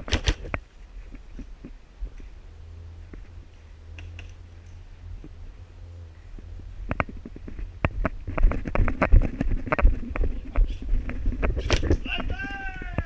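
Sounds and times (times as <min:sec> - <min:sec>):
gear clicks and knocks: 0:06.1 - 0:12.1.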